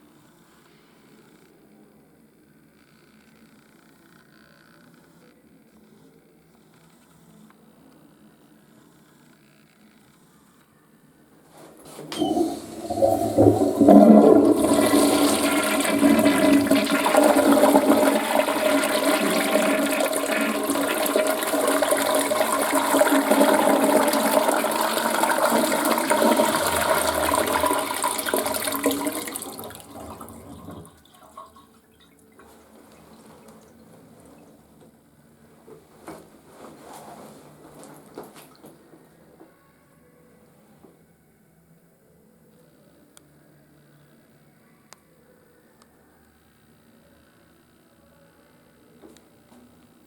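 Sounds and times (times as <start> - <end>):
toilet flushing: 11.9 - 34.6.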